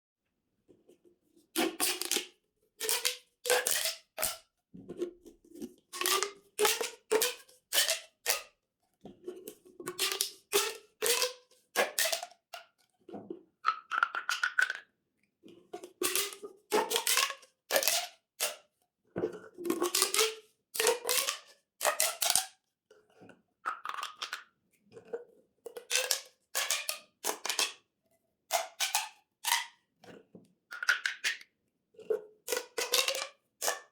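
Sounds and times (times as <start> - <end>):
plastic pop tubes ratcheting rasp: 1.6 - 4.4, 6.0 - 8.5, 9.9 - 12.4, 13.7 - 14.8, 16.0 - 18.6, 19.7 - 22.6, 23.7 - 24.4, 25.8 - 27.8, 28.5 - 29.8, 30.8 - 31.4, 32.5 - 33.9.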